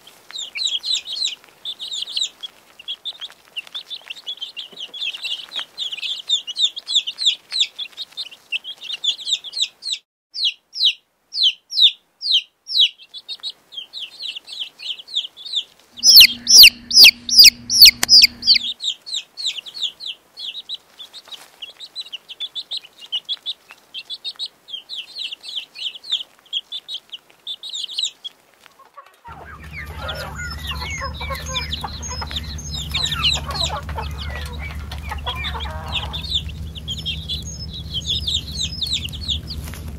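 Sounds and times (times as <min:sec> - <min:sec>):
chicks peeping: 0:00.3 - 0:39.9
low hum: 0:16.0 - 0:18.7, 0:29.3 - 0:39.9.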